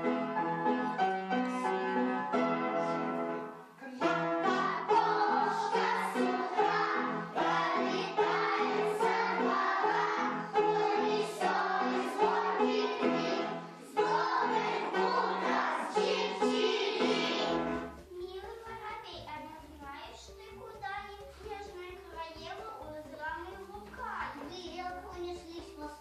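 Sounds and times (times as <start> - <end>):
choir singing with instruments: 4.0 - 18.0.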